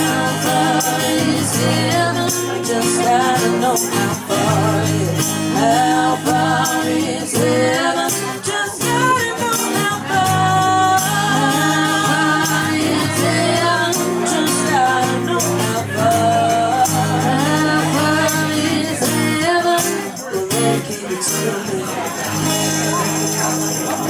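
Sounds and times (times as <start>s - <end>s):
live band music: 8.2s - 24.0s.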